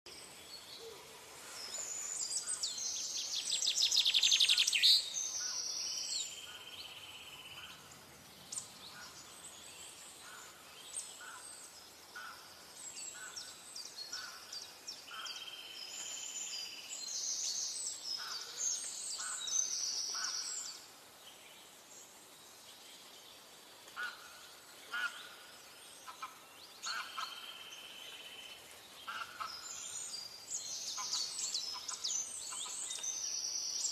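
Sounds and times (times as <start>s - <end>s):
birds chirping and trilling: 0.1s - 33.9s
faint steady hiss: 0.1s - 33.9s.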